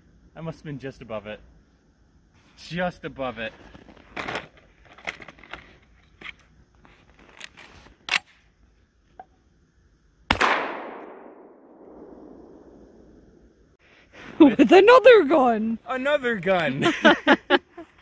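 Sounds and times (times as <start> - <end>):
shotgun shot echoing: 10.3 - 13.0.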